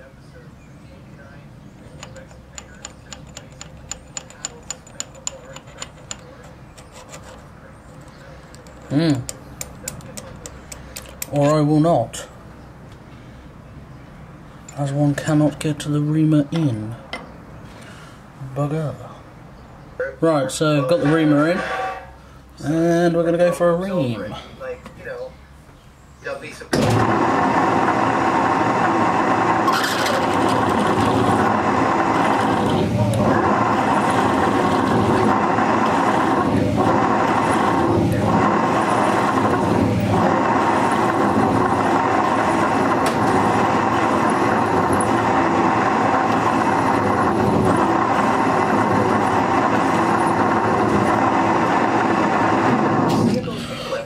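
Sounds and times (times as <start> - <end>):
milling machine drone: 26.8 - 53.8.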